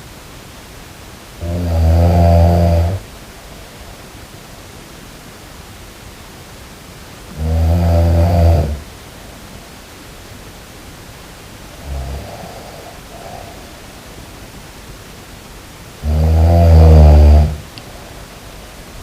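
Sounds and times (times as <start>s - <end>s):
steady hiss: 0.0s - 19.0s
loud low snores: 1.4s - 3.1s, 7.3s - 8.9s, 11.7s - 13.9s, 16.0s - 17.7s.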